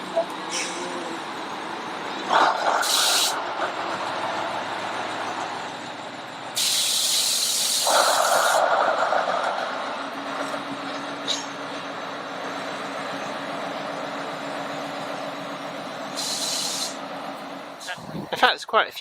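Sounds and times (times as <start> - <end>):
train rumbling: 0.0 - 19.0
loud steam hiss: 2.7 - 3.4, 6.5 - 8.6, 16.1 - 17.0.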